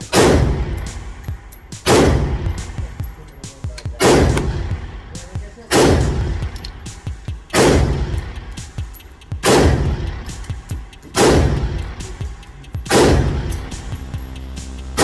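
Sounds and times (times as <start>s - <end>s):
faint distant gunshots: 0.0s - 3.1s, 3.9s - 14.4s
loud gunshots echoing: 0.0s - 15.0s.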